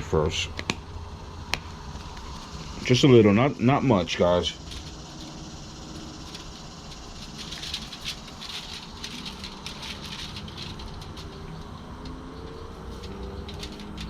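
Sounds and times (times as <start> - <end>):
shaker rattling: 4.3 - 14.0.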